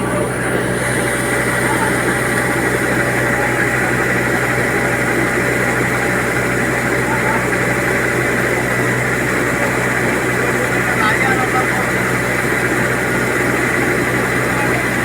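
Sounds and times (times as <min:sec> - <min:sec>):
harvester engine running: 0:00.0 - 0:15.0.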